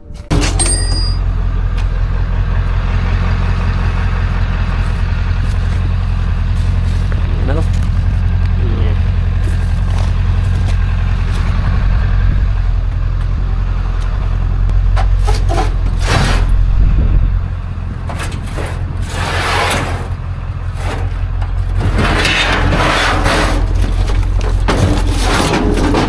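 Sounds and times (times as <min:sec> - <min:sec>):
vehicle engine rumble: 0:00.0 - 0:26.0
scraping and rustling: 0:04.8 - 0:08.3, 0:15.0 - 0:16.6, 0:17.7 - 0:26.0.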